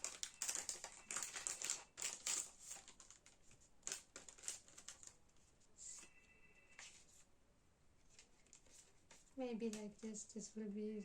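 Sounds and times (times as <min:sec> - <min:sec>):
packaging crinkling and rustling: 0:00.0 - 0:05.2.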